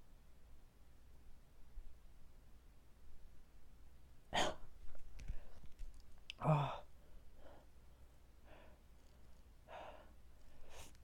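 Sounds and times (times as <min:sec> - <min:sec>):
man sighing loudly: 0:06.4 - 0:06.9
man breathing hard: 0:06.5 - 0:08.9, 0:09.6 - 0:11.0.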